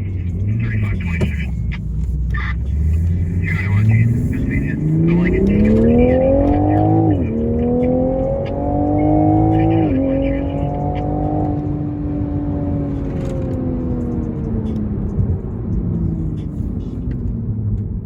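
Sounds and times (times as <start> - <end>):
car engine accelerating through gears: 0.0 - 18.0.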